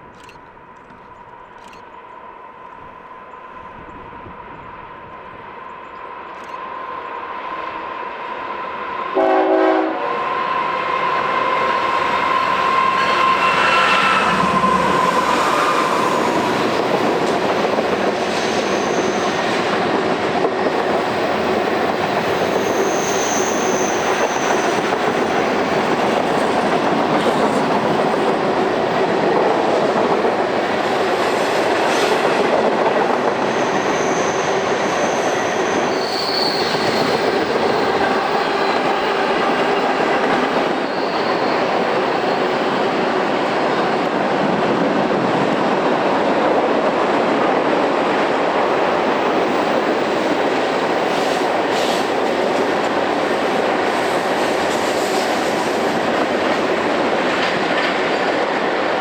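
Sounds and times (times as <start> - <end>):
freight train rumbling past: 0.0 - 59.0
train horn: 9.1 - 16.5, 35.9 - 41.7
train wheel squeals: 10.3 - 28.3, 33.0 - 43.7, 49.2 - 56.6.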